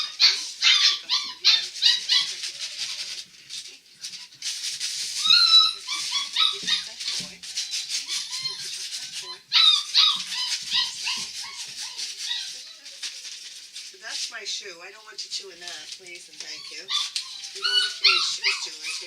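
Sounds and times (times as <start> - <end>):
puppies whining and yelping: 0.0 - 3.2, 5.0 - 12.9, 16.4 - 19.0.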